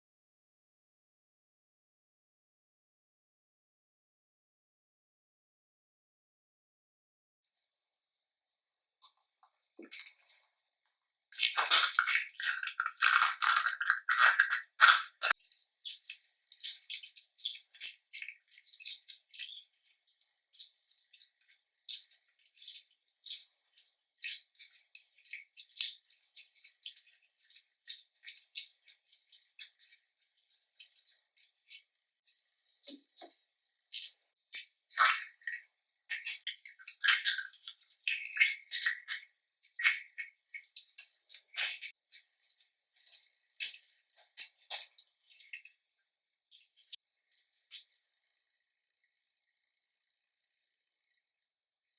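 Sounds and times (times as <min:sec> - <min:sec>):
slime squelching by hand: 0:11.3 - 0:48.1
slime crackling and popping: 0:11.4 - 0:19.6.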